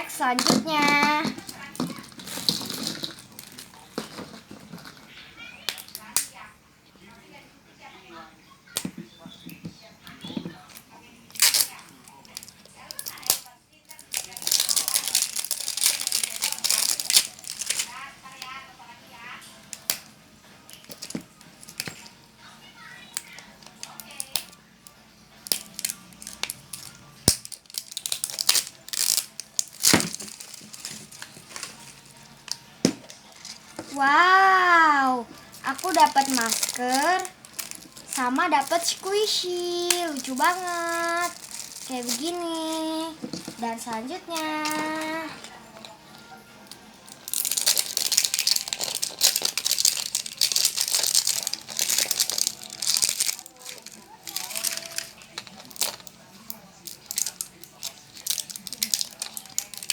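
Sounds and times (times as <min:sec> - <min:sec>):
plastic wrapping crinkling: 0:00.0 - 0:06.5, 0:08.8 - 0:22.1, 0:23.2 - 0:59.9.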